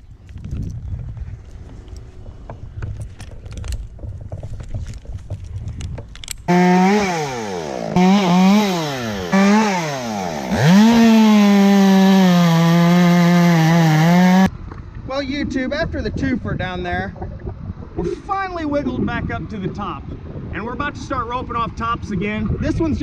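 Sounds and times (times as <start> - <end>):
chainsaw revving: 6.5 - 14.5.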